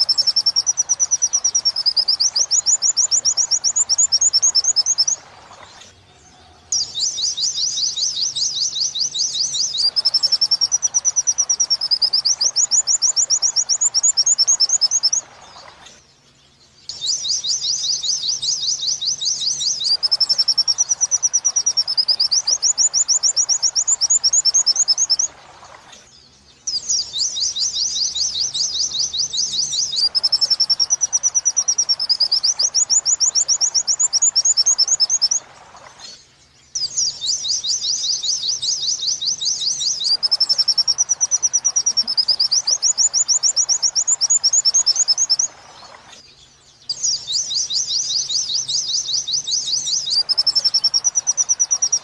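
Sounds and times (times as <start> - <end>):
high-pitched trilled bird chirps: 0.0 - 16.0, 16.8 - 25.4, 26.0 - 52.0.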